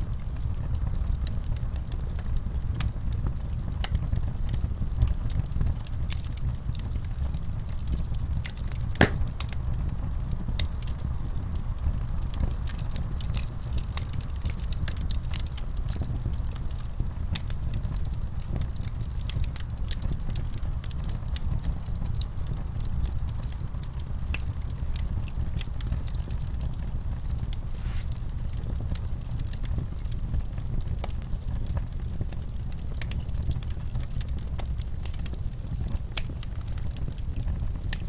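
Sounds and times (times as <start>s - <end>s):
fire crackling and popping: 0.1s - 38.0s
fire flames rumbling: 0.1s - 38.0s.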